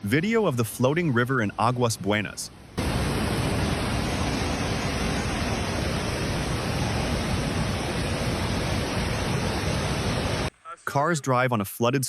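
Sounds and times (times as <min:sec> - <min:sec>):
rushing river water: 0:02.7 - 0:10.5.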